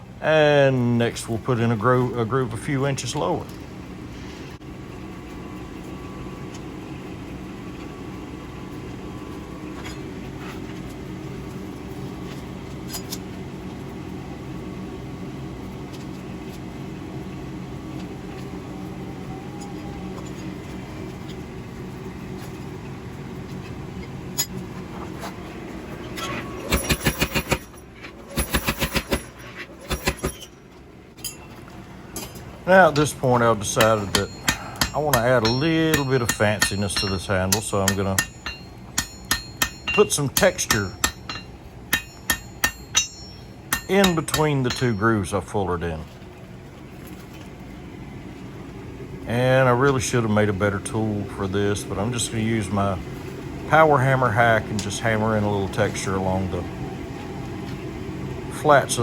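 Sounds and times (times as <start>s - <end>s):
machine hum: 0.0s - 59.0s
power hammer blows: 26.6s - 30.5s, 32.8s - 44.9s.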